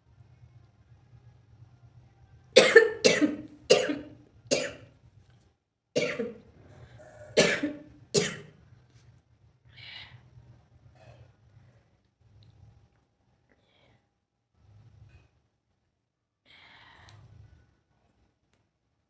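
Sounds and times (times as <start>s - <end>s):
person coughing hard: 2.6s - 4.8s, 6.0s - 6.4s, 7.3s - 8.5s.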